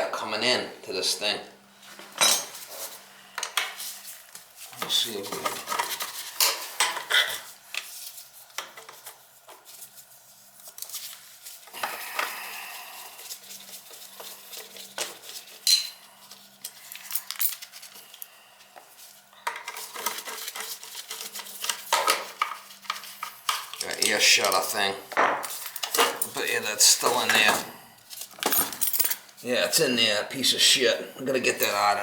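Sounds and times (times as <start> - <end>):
metal parts and tools clinking: 28.4 - 29.2.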